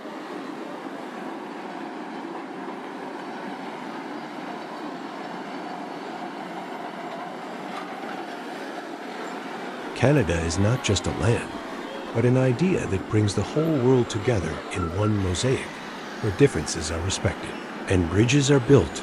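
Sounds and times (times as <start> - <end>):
faint steady hum: 9.9 - 19.0.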